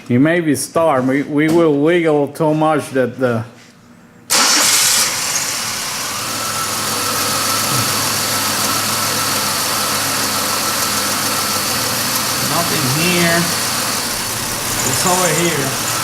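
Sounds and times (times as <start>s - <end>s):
car engine starting and idling: 4.3s - 16.0s
faint engine whine: 4.3s - 16.0s.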